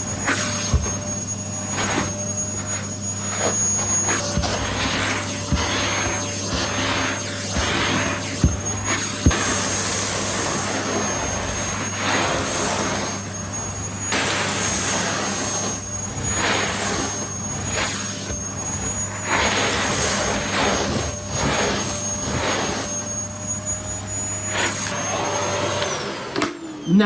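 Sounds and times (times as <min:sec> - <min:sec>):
vacuum cleaner running: 0:00.0 - 0:27.0.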